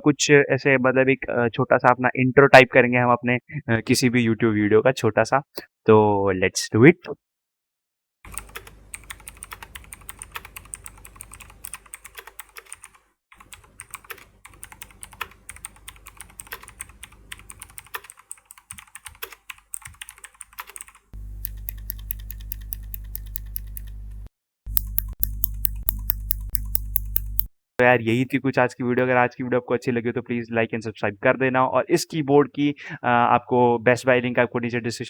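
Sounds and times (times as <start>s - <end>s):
mechanical keyboard key clicks: 13.9s - 24.0s, 24.7s - 27.5s
steady low hum: 21.2s - 27.5s.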